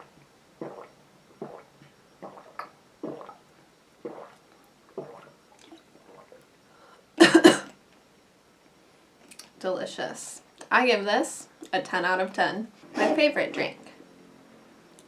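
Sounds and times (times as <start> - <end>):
person gulping water: 0.6 - 3.4, 4.0 - 6.4.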